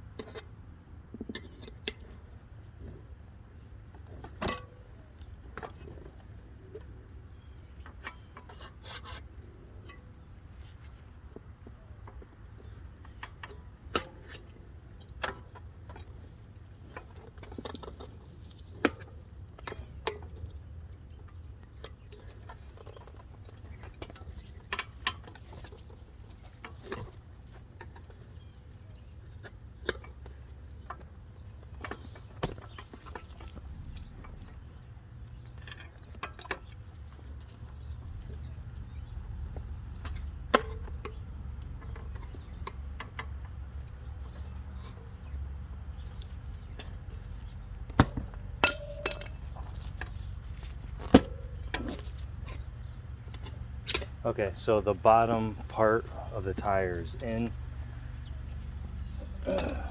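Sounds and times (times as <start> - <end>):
tire spoons clicking on wheel rim: 3.9 - 59.9
low background rumble: 32.2 - 59.9.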